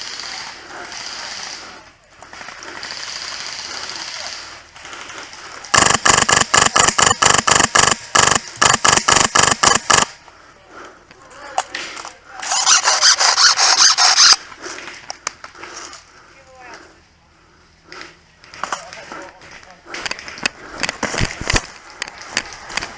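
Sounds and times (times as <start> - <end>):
airsoft rifle firing shots: 5.7 - 10.2.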